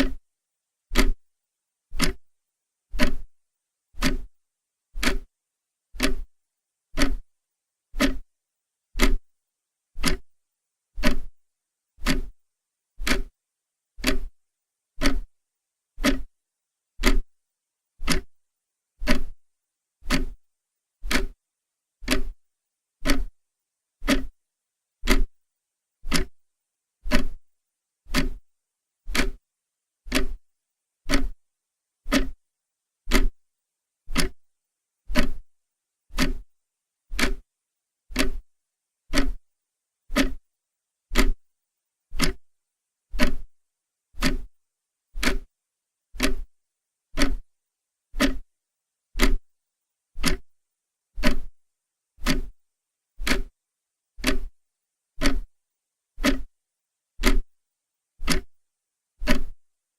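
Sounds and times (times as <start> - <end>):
clock ticking: 0.9 - 1.2, 1.9 - 2.2, 2.9 - 3.3, 4.0 - 4.3, 5.0 - 5.3, 6.0 - 6.3, 7.0 - 7.3, 8.0 - 8.2, 9.0 - 9.2, 10.0 - 10.3, 11.0 - 11.3, 12.0 - 12.4, 13.0 - 13.3, 14.0 - 14.3, 15.0 - 15.3, 16.0 - 16.3, 17.0 - 17.3, 18.0 - 18.4, 19.0 - 19.4, 20.0 - 20.4, 21.0 - 21.4, 22.0 - 22.4, 23.0 - 23.4, 24.0 - 24.3, 25.0 - 25.3, 26.1 - 26.4, 27.1 - 27.4, 28.1 - 28.4, 29.1 - 29.4, 30.1 - 30.4, 31.1 - 31.4, 32.1 - 32.4, 33.1 - 33.4, 34.1 - 34.5, 35.1 - 35.4, 36.1 - 36.5, 37.1 - 37.5, 38.1 - 38.5, 39.1 - 39.4, 40.1 - 40.4, 41.1 - 41.4, 42.2 - 42.5, 43.2 - 43.5, 44.2 - 44.5, 45.2 - 45.5, 46.2 - 46.5, 47.2 - 47.5, 48.2 - 48.5, 49.2 - 49.4, 50.2 - 50.5, 51.2 - 51.5, 52.2 - 52.6, 53.2 - 53.6, 54.2 - 54.6, 55.2 - 55.5, 56.2 - 56.5, 57.2 - 57.5, 58.2 - 58.6, 59.2 - 59.6.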